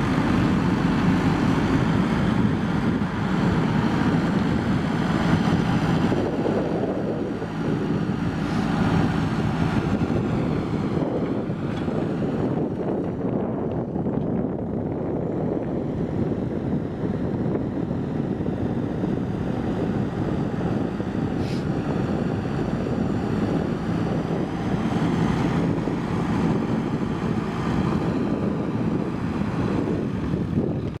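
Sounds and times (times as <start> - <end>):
diesel engine running: 0.0 - 31.0
wind buffeting microphone: 0.0 - 31.0
brief hiss: 21.4 - 21.7.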